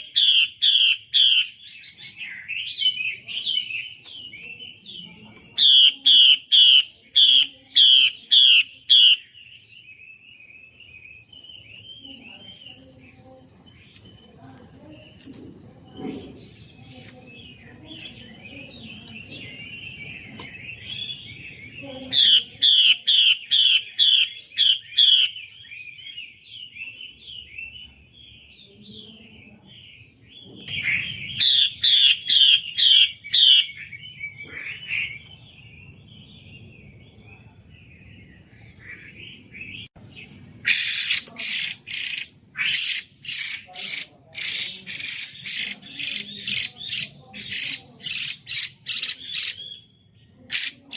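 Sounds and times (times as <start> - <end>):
songbird warbling: 0.0 - 9.9, 17.0 - 28.0, 40.6 - 50.9.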